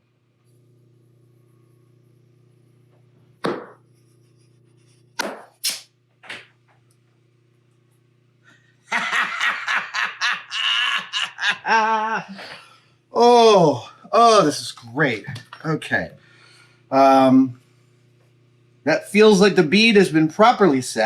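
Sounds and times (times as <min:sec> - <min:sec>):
steady low hum: 0:00.0 - 0:21.0
sharp slapping sounds: 0:03.4 - 0:03.8, 0:05.2 - 0:06.5.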